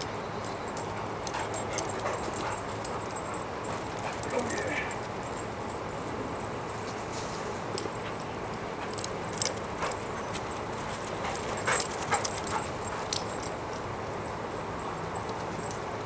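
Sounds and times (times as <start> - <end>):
dog vocalizing: 4.0 - 5.0.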